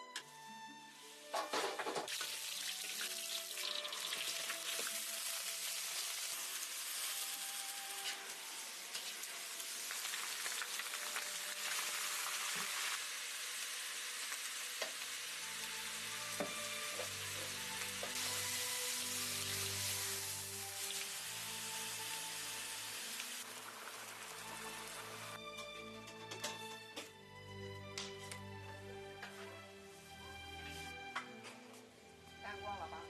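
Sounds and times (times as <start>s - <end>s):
food sizzling in hot oil: 2.0s - 25.4s.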